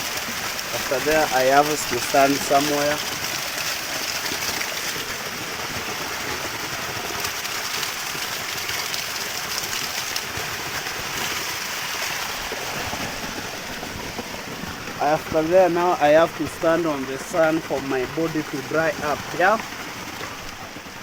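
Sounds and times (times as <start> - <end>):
small waterfall splashing: 0.0 - 21.0.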